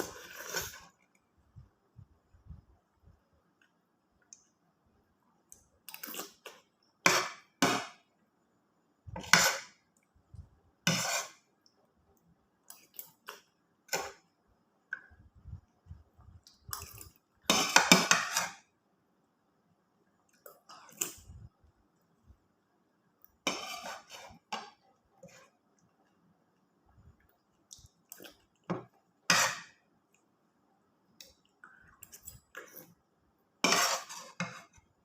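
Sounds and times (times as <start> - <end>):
spoon scraping on a plate: 0.0 - 0.9, 9.1 - 9.8, 10.9 - 11.4, 17.5 - 18.6, 23.4 - 25.5, 28.8 - 29.8, 33.6 - 34.8.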